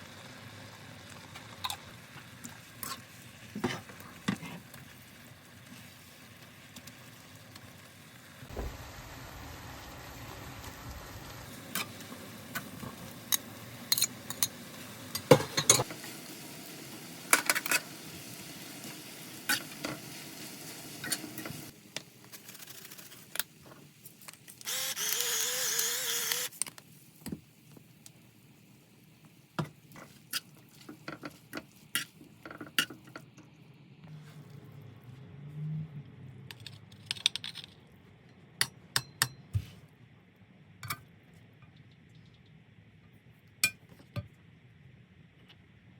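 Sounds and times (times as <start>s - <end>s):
food sizzling in a pan: 0.0s - 29.1s.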